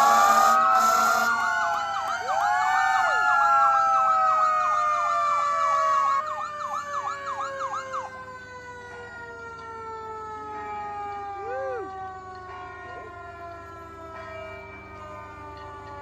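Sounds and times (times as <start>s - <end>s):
electronic siren yelping: 0.0s - 2.6s
siren wail falling in pitch: 0.0s - 13.5s.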